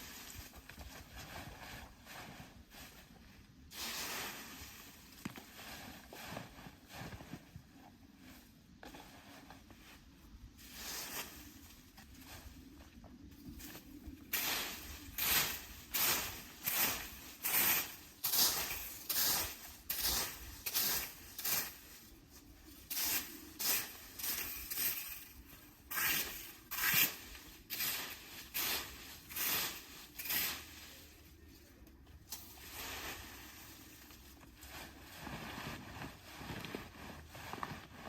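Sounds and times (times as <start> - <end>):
hand tool scraping rough surface: 13.6 - 22.0, 22.8 - 31.3, 32.4 - 38.0.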